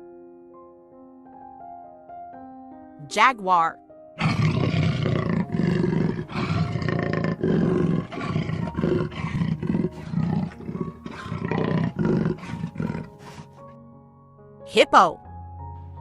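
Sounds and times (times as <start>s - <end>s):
jaguar roaring: 4.2s - 13.6s.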